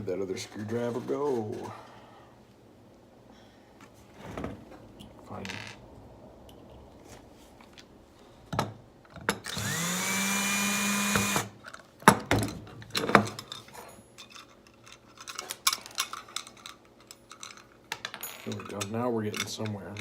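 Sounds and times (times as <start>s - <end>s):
cordless power driver spinning: 9.5s - 11.5s
clicks and knocks of handling: 11.6s - 20.0s.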